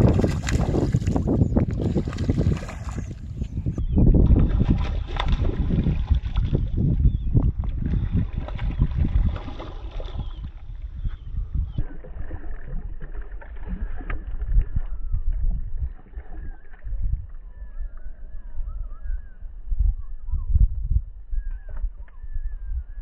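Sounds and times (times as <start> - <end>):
water sloshing and splashing: 0.0 - 3.5, 4.2 - 10.9, 11.8 - 15.0.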